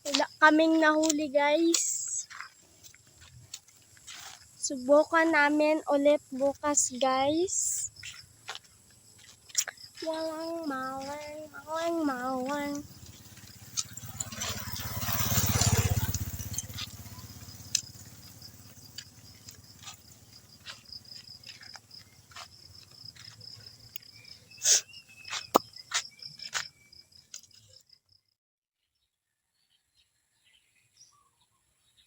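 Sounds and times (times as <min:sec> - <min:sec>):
crickets chirping in high trill: 0:00.0 - 0:28.2.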